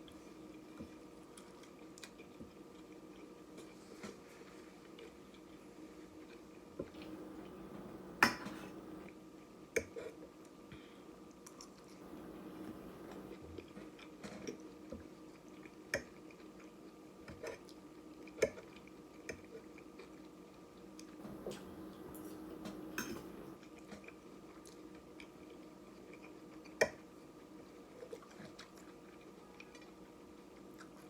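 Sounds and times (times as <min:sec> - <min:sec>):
mouth chewing food: 0:00.5 - 0:09.1, 0:12.0 - 0:13.4, 0:21.2 - 0:31.0
low steady hum: 0:06.8 - 0:09.1, 0:12.0 - 0:13.4, 0:21.2 - 0:23.6.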